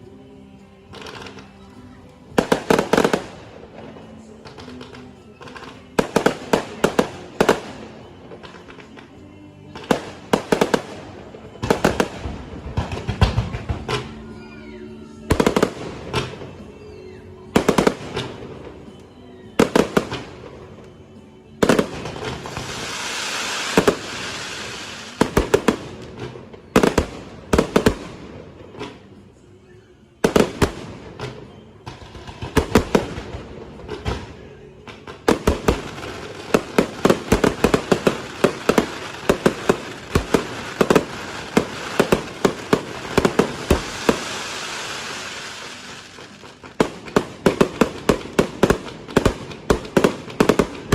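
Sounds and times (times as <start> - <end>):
firework bangs: 21.6 - 26.1, 35.2 - 50.9
firework hissing crackle: 21.9 - 26.0, 35.4 - 50.9.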